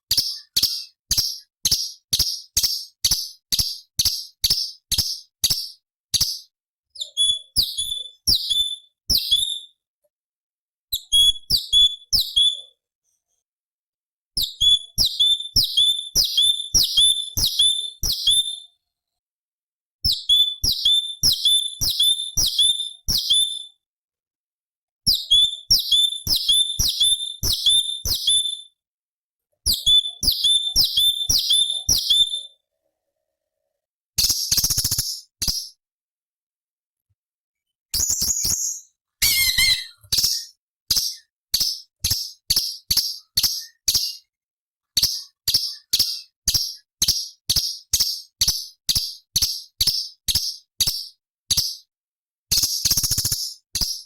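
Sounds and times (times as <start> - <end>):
bird calling sharp repeated notes: 0.0 - 9.6, 38.0 - 44.3.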